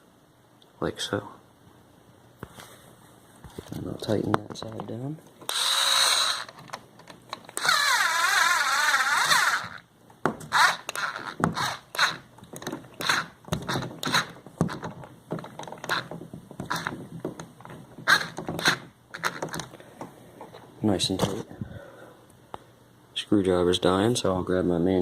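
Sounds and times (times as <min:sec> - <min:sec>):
cordless screwdriver motor running: 0:05.5 - 0:06.6, 0:07.6 - 0:09.8, 0:10.5 - 0:12.2
small clicks and knocks: 0:06.4 - 0:07.7, 0:10.1 - 0:20.6.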